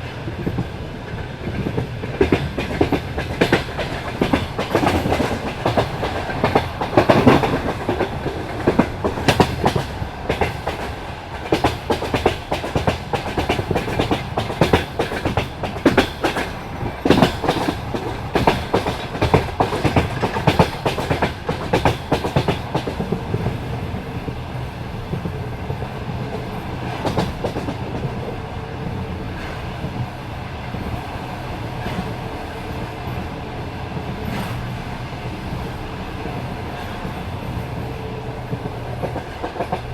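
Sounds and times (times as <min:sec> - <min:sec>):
train rumble: 0:00.0 - 0:39.9
train wheels clattering over rail joints: 0:00.4 - 0:23.6, 0:25.1 - 0:28.3.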